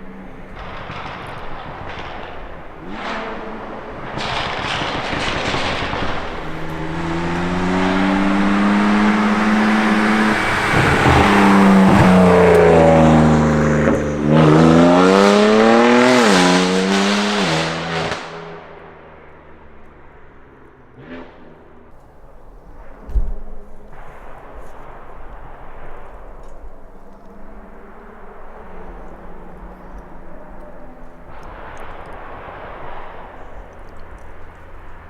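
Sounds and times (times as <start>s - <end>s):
car engine accelerating hard: 0.0s - 19.0s.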